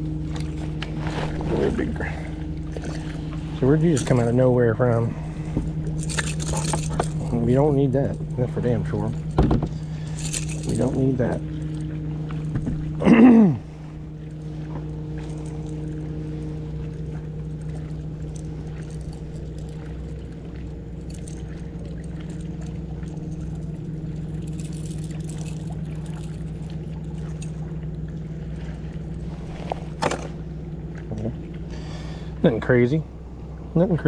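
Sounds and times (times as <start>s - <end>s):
boat motor humming: 0.0s - 34.0s.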